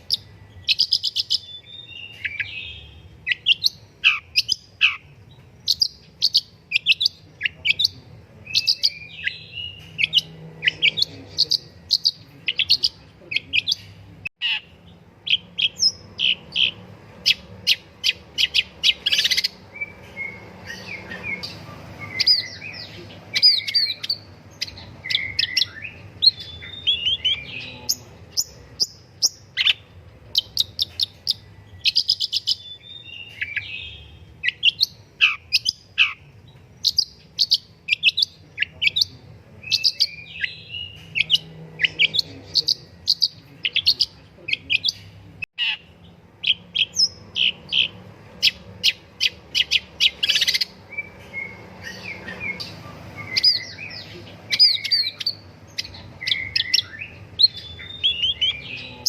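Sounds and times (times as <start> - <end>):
bird harsh chattering: 0.0 - 7.9, 8.5 - 36.2, 36.9 - 59.0
bird singing chirps and whistles: 15.3 - 29.8, 46.4 - 59.0.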